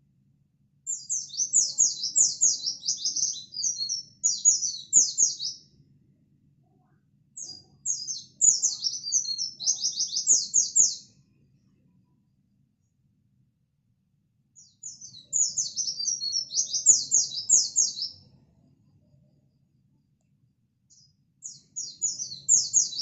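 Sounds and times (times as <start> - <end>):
bird high twittering song: 0.9 - 5.7, 7.4 - 11.2, 14.6 - 18.4, 20.9 - 23.0.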